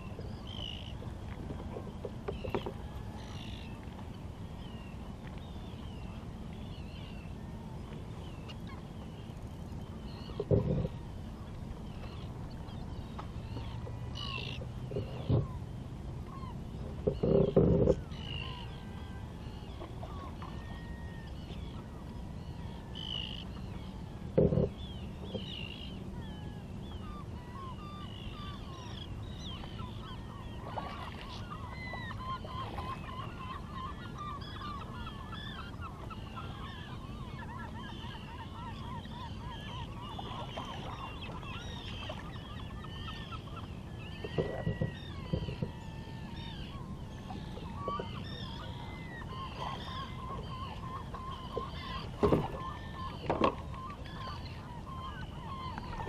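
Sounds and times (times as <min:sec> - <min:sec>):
wind and water rushing: 0:09.2 - 0:22.6, 0:43.9 - 0:55.0
flock of birds calling: 0:16.3 - 0:56.0.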